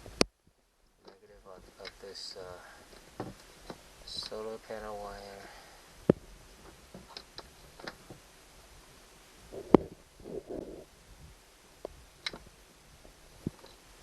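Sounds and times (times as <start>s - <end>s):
light clicks and taps of handling: 2.9s - 4.4s
muffled rubbing noise: 6.1s - 14.0s.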